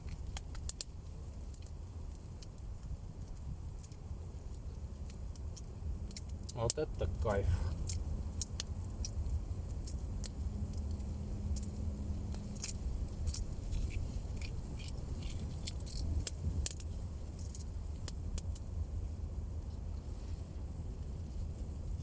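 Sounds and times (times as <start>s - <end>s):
campfire crackling: 0.0s - 22.0s
low rumble: 2.8s - 22.0s.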